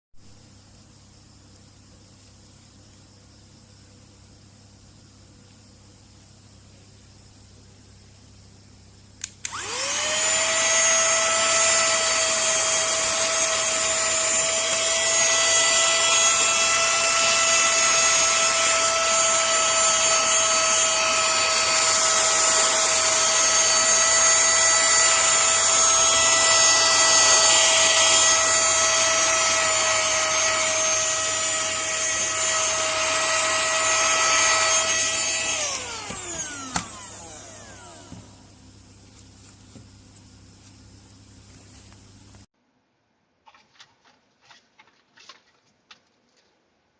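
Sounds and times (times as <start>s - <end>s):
small motor high whine: 9.2s - 39.9s.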